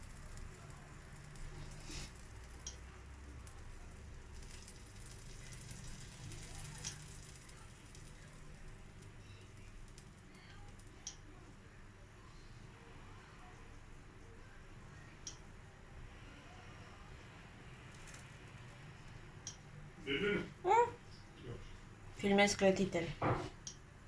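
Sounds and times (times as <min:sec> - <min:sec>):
batter sizzling in frying pan: 0:00.0 - 0:11.0.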